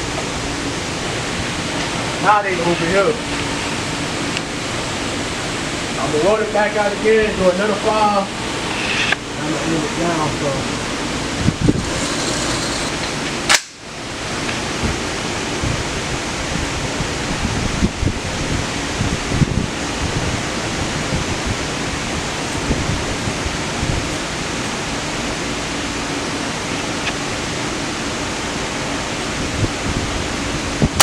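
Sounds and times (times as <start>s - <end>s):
rushing air: 10.4s - 31.0s.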